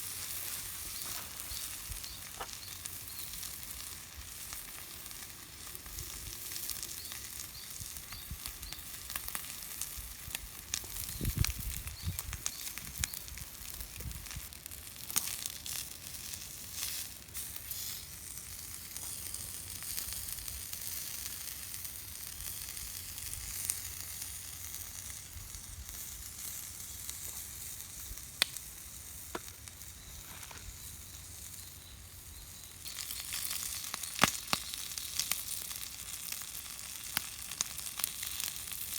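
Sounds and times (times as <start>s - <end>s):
food sizzling on griddle: 0.0s - 38.9s
sharp pops: 29.3s - 29.6s.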